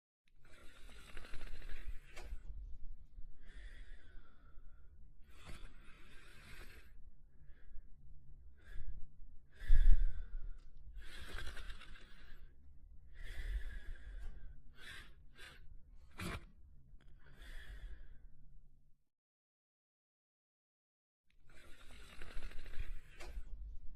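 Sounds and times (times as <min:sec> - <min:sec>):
dog snoring softly: 0:00.4 - 0:02.5, 0:11.0 - 0:12.5, 0:21.4 - 0:23.6.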